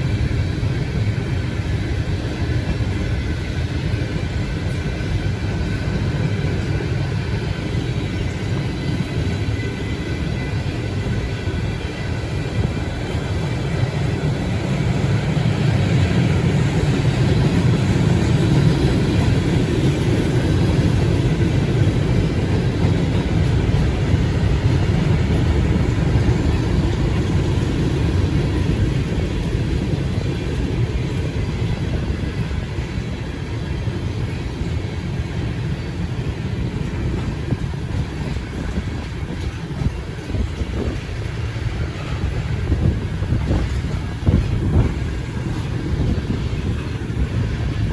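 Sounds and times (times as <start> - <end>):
freight train wheels rumbling on rail: 0.0 - 47.9.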